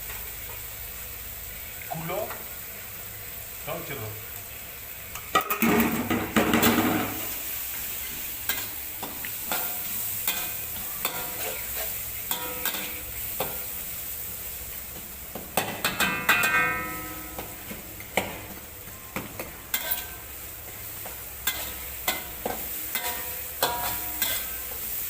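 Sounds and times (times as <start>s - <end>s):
meat sizzling in a frying pan: 0.0s - 25.0s
spatula scraping a pan: 8.0s - 13.6s, 19.7s - 20.3s, 21.4s - 24.9s.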